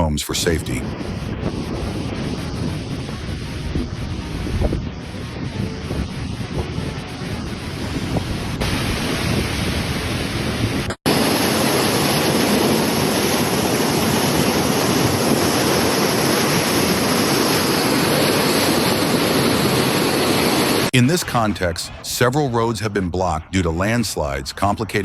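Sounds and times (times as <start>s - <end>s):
wind on microphone: 0.0s - 25.0s
floodwater rushing: 7.8s - 21.4s.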